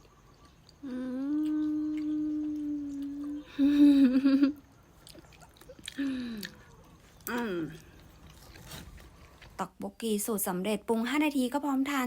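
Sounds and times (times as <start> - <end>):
person humming: 0.8 - 4.4, 7.3 - 7.8.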